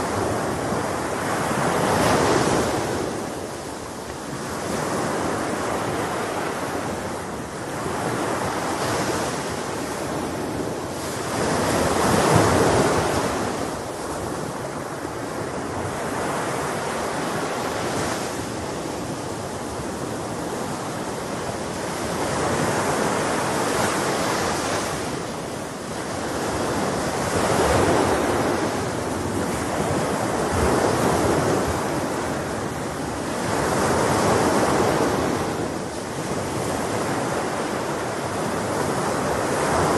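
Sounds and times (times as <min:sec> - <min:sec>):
sea waves washing onto shore: 0:00.0 - 0:39.9.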